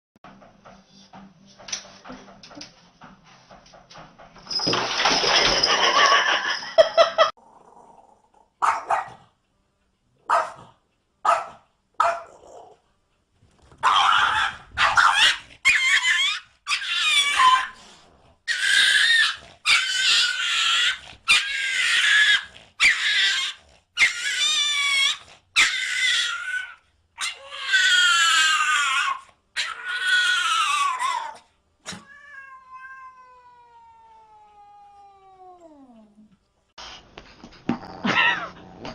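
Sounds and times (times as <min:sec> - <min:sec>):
dog whining and yelping: 0:13.8 - 0:17.8, 0:18.5 - 0:33.1.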